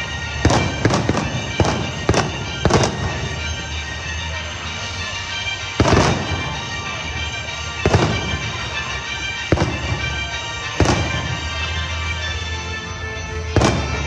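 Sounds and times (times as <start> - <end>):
fireworks bursting: 0.0 - 12.7, 13.4 - 14.0
music playing: 0.0 - 14.0.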